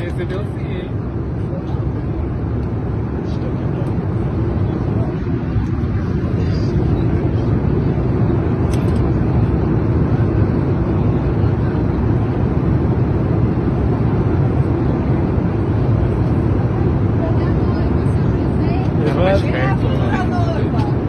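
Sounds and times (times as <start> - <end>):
airliner cabin drone: 0.0 - 21.0.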